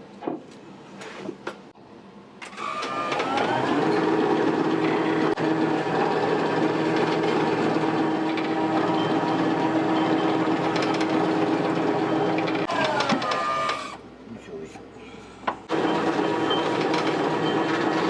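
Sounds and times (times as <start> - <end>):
kitchen machine motor whining: 2.4 - 14.1, 15.6 - 18.0.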